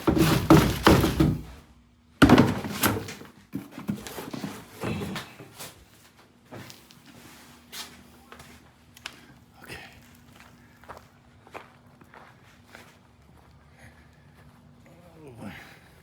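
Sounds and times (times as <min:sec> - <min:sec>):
thumps and thuds: 0:00.0 - 0:01.6, 0:02.2 - 0:04.1.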